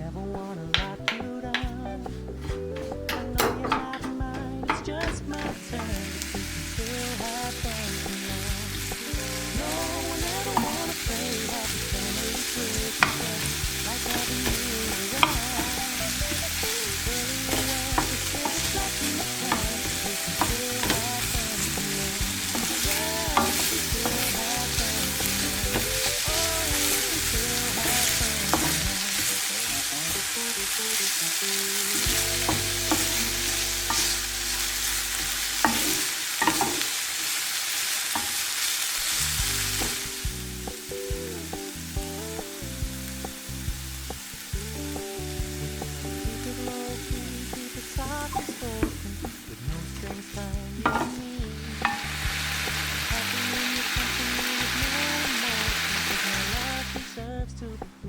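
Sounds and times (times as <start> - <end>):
quiet instrumental music: 0.0 - 36.9, 39.1 - 58.0
food sizzling in a pan: 4.7 - 57.3.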